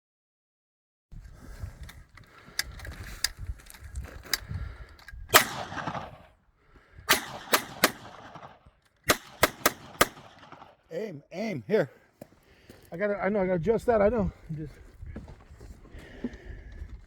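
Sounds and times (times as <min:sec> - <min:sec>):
gunshots with echo: 0:05.3 - 0:06.3, 0:07.1 - 0:10.9.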